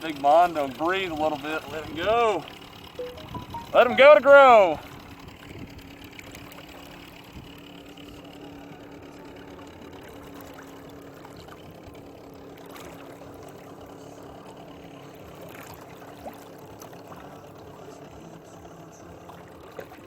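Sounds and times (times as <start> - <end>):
idling boat motor: 0.0 - 20.0
water sloshing and trickling: 10.0 - 18.0, 18.9 - 20.0.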